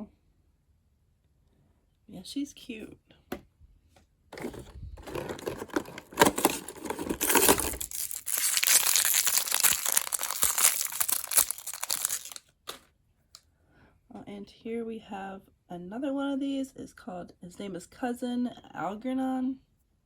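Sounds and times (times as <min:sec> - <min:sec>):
toy packaging crinkling and tearing: 0:04.4 - 0:12.8.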